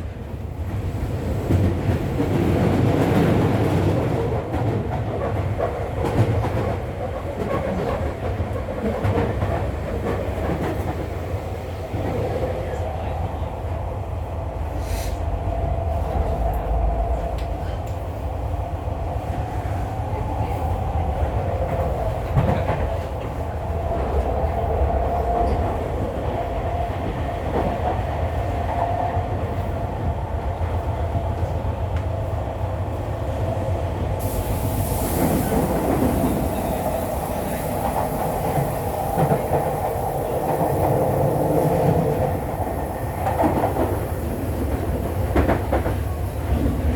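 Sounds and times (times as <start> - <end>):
train wheels rumbling on rail: 0.0 - 46.9
high hiss: 34.2 - 45.2.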